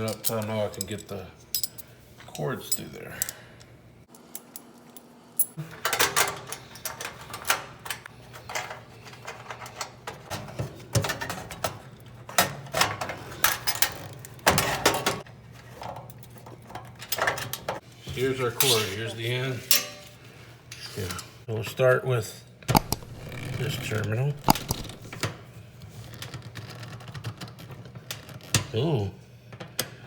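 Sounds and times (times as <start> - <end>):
metal tools clinking: 0.0 - 1.9.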